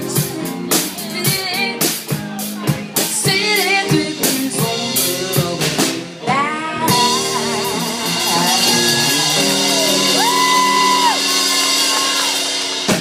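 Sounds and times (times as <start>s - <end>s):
woman singing: 0.0s - 2.2s, 3.0s - 11.2s
live rock band: 0.0s - 13.0s.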